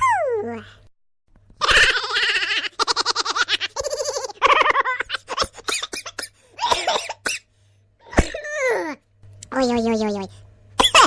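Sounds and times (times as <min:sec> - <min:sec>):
canned laughter: 0:01.6 - 0:07.2, 0:10.8 - 0:11.0.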